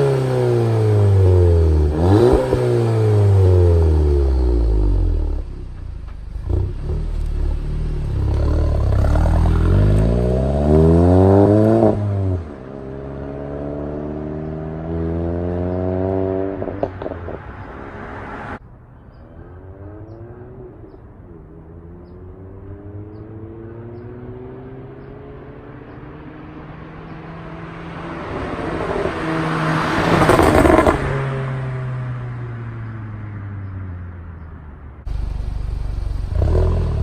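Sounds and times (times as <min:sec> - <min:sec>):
car exhaust revving: 0:00.0 - 0:17.6, 0:35.1 - 0:37.0.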